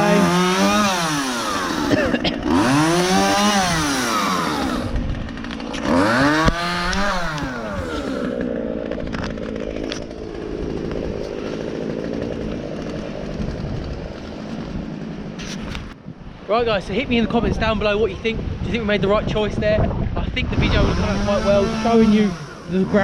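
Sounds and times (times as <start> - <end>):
chainsaw revving: 0.0 - 15.4, 20.4 - 23.0.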